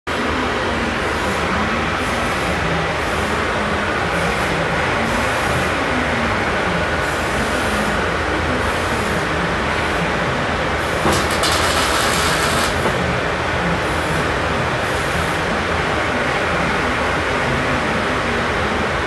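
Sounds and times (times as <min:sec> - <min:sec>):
welding machine hum: 0:10.8 - 0:13.4
welding hiss: 0:10.9 - 0:13.1.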